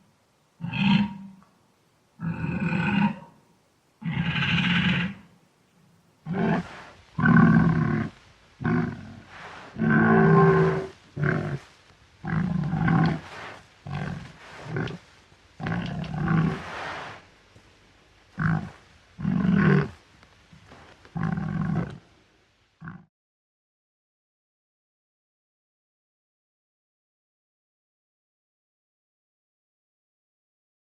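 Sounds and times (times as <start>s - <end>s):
wild boar grunting and growling: 0.6s - 1.4s, 2.2s - 3.4s, 4.0s - 5.3s, 6.2s - 17.3s, 18.3s - 20.0s, 20.6s - 22.1s, 22.8s - 23.1s.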